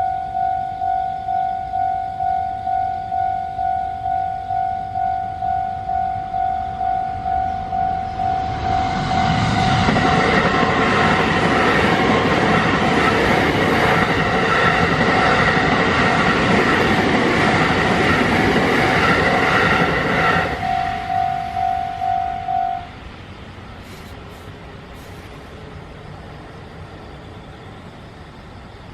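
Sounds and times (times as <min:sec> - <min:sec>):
level crossing warning bell dinging: 0:00.0 - 0:13.1, 0:13.8 - 0:22.9
electric train rumbling past: 0:00.0 - 0:28.9.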